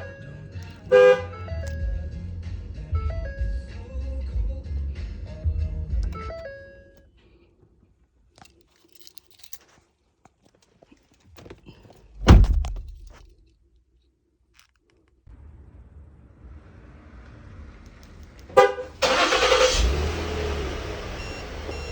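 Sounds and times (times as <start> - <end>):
heavy thunk: 12.2 - 13.3.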